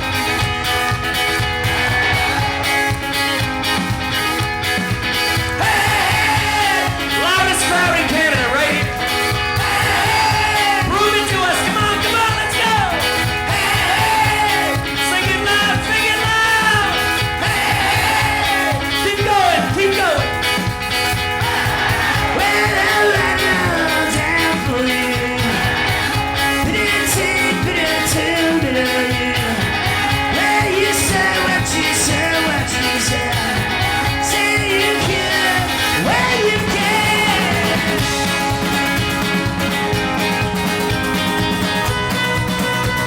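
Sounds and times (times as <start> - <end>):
guitar: 0.0 - 43.0
steady drum beat: 0.0 - 43.0
person singing: 5.4 - 20.4, 21.4 - 39.3.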